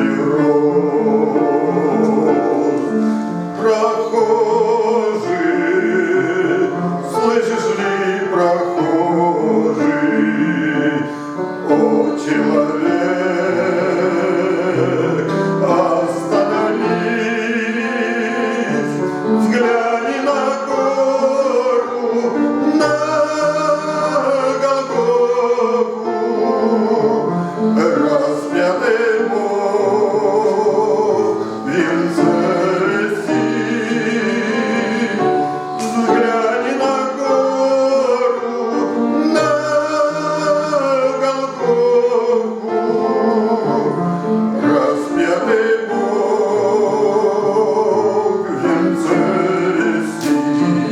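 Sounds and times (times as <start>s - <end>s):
instrumental accompaniment: 0.0s - 50.9s
man singing church song: 0.0s - 50.9s.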